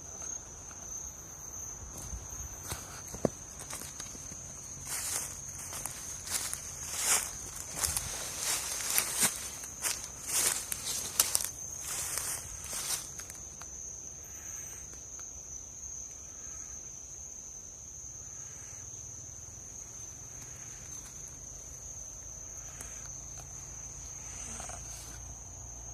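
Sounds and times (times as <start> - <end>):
cricket trilling: 0.0 - 25.9
footsteps: 1.9 - 13.4.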